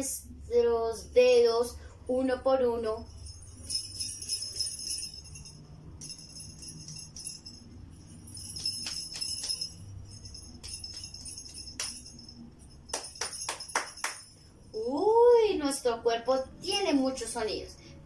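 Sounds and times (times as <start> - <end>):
jingle bells shaking: 2.7 - 15.1.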